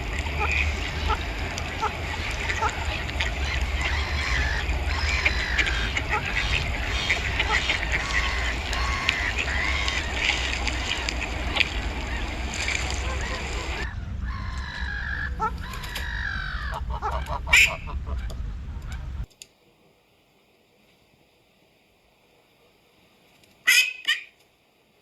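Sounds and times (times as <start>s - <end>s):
ducks quacking: 0.0s - 19.3s
geese honking: 0.0s - 19.3s
rumbling background: 0.0s - 19.3s.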